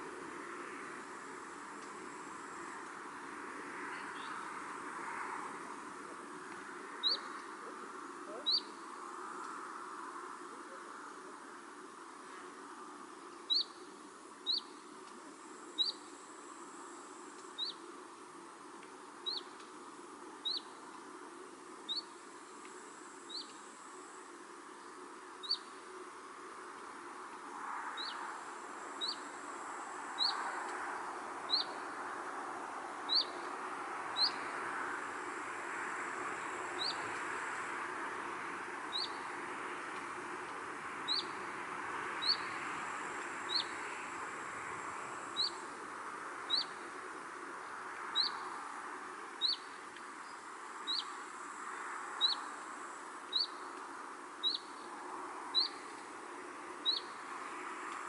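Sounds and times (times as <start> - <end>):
soft rushing breeze: 0.0 - 58.0
bird chirping: 7.0 - 7.4, 8.3 - 8.8, 13.5 - 13.8, 14.4 - 14.8, 15.8 - 16.0, 17.6 - 17.8, 19.2 - 19.6, 21.9 - 22.1, 25.4 - 25.7, 29.0 - 29.3, 31.5 - 31.8, 33.1 - 33.5, 34.2 - 34.4, 36.8 - 37.1, 38.9 - 39.2, 41.1 - 41.4, 42.2 - 42.6, 43.5 - 43.8, 45.4 - 45.6, 46.5 - 46.8, 48.2 - 48.4, 49.4 - 51.2, 52.2 - 52.5, 53.3 - 53.6, 54.4 - 54.8, 55.6 - 55.9, 56.8 - 57.2.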